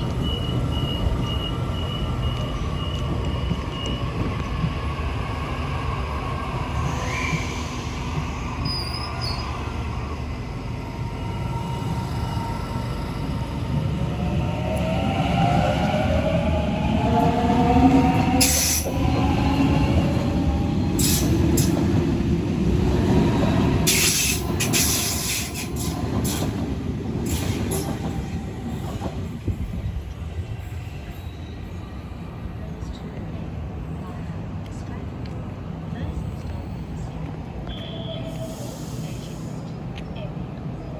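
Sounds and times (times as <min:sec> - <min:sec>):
train rumbling past: 0:00.0 - 0:40.9.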